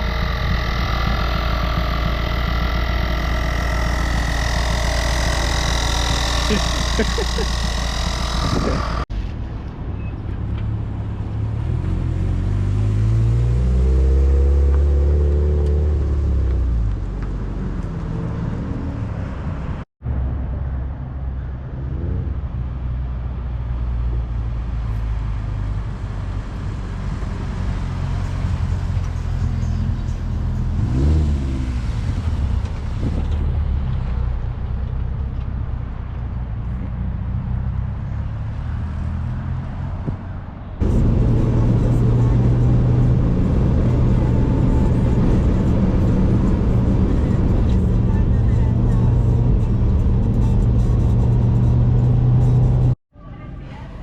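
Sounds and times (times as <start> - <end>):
engine revving: 0.0 - 9.1, 11.5 - 19.3, 24.6 - 34.2, 40.8 - 53.0
car engines rumbling: 0.0 - 54.0.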